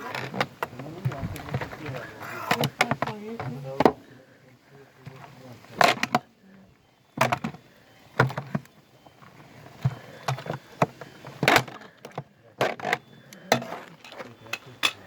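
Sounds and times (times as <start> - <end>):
hard objects knocking and clattering: 1.0 - 4.0.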